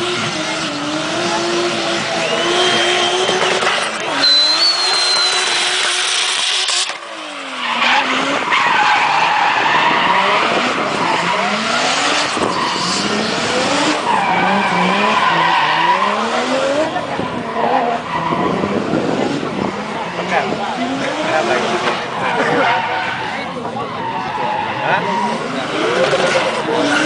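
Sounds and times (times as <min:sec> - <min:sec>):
car engine revving: 0:00.0 - 0:27.0
tyres squealing: 0:02.2 - 0:06.9.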